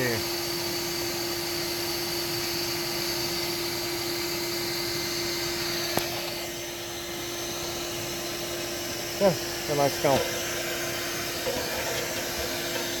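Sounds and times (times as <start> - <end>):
motor whirring and humming: 9.8 - 13.0.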